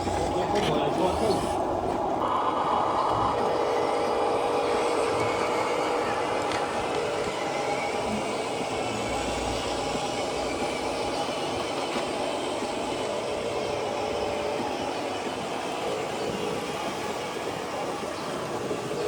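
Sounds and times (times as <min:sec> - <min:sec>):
small electric motors whirring: 0:00.0 - 0:19.0.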